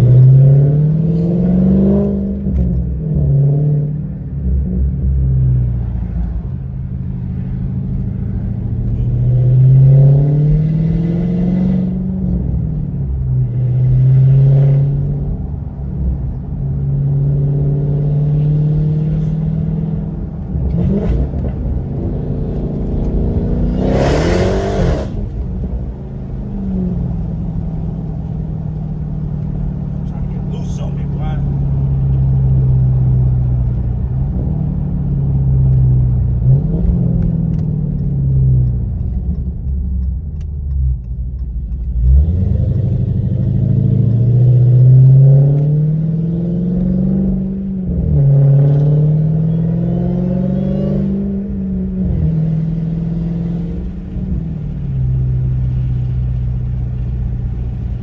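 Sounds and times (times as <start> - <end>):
car engine revving hard: 20.7 - 25.5, 42.0 - 54.2.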